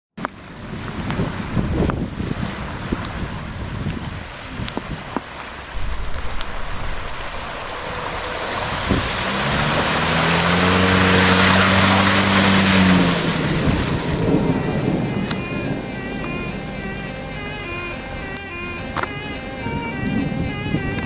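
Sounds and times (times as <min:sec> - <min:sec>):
wind on microphone: 0:00.4 - 0:16.9, 0:18.1 - 0:21.0
mud or water splashing: 0:02.4 - 0:17.5
car engine revving: 0:05.8 - 0:20.7.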